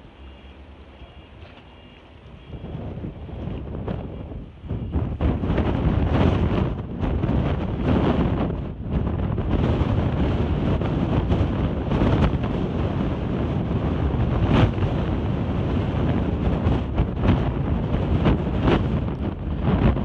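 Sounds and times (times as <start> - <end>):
wind buffeting microphone: 2.2 - 20.0.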